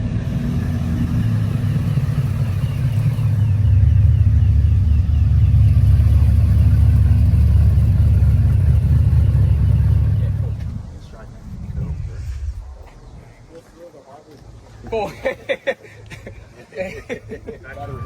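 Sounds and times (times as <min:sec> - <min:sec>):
loud deep car engine and exhaust: 0:00.0 - 0:13.4.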